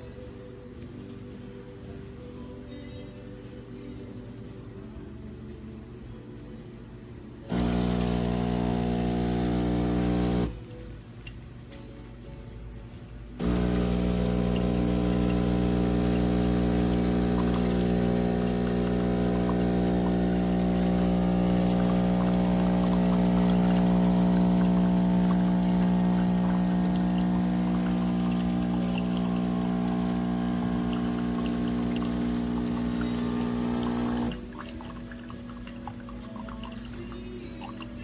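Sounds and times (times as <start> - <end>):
water pump humming: 7.5 - 10.6, 13.4 - 38.0
water pouring: 7.5 - 11.4, 13.0 - 38.0.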